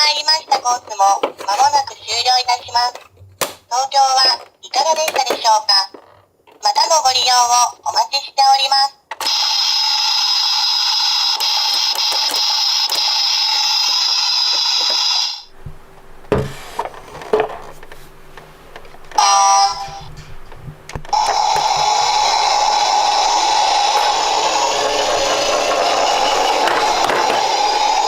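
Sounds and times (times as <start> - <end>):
toy clicks and knocks: 10.2 - 15.4, 21.1 - 28.0.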